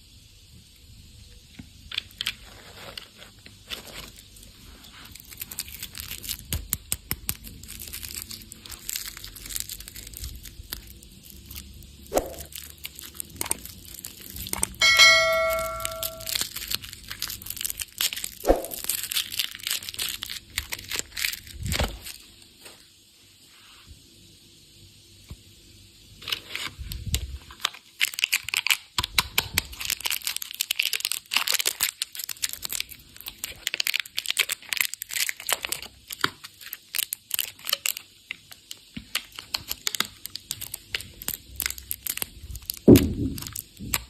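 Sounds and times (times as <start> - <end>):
plastic wrappers tearing and crinkling: 1.9 - 14.8, 15.5 - 22.7, 26.2 - 44.0
bell-like ding: 14.8 - 16.4.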